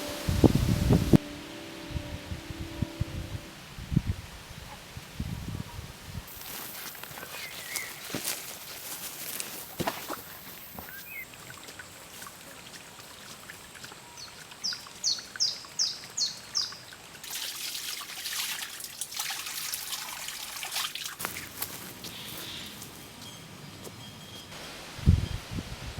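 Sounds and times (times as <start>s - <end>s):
hissing noise with crackles: 0.0s - 1.8s
songbird singing: 7.1s - 8.3s, 10.6s - 11.4s, 14.0s - 16.9s, 22.0s - 24.6s
water trickling: 10.9s - 22.3s.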